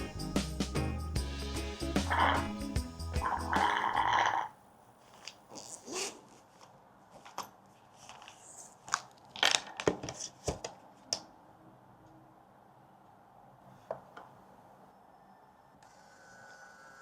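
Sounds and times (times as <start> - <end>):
paper rustling: 6.1 - 10.6.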